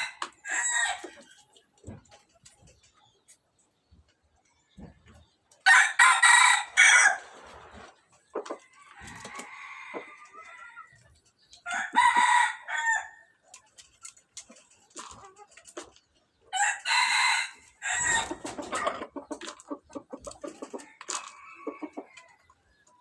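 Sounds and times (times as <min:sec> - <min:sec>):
chicken clucking: 0:00.0 - 0:23.0
rooster crowing: 0:05.7 - 0:07.2, 0:11.7 - 0:13.2, 0:16.6 - 0:18.4.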